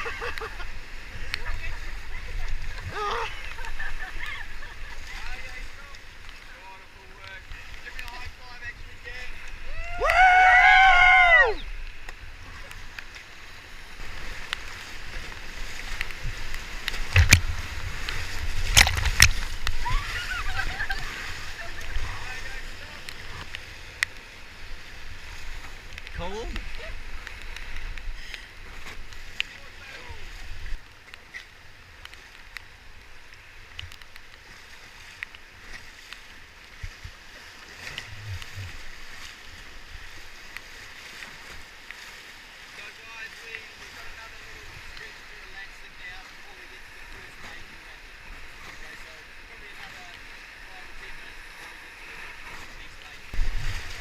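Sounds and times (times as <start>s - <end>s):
river water rushing: 0.0s - 54.0s
water splashes: 0.0s - 54.0s
splash with low thump: 16.2s - 20.9s, 53.3s - 54.0s
low rumbles: 37.8s - 39.2s.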